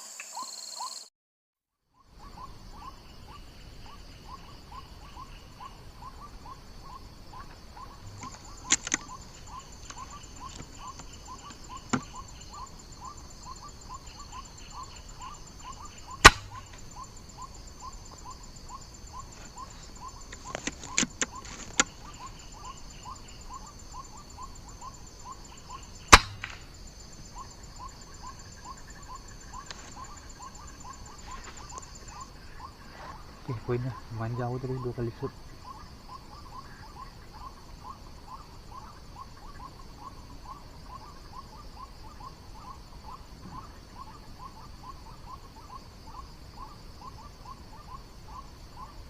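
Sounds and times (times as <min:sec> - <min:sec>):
repeated animal call: 0:01.9 - 0:49.0
air rifle shot: 0:16.2 - 0:16.7, 0:26.1 - 0:26.6.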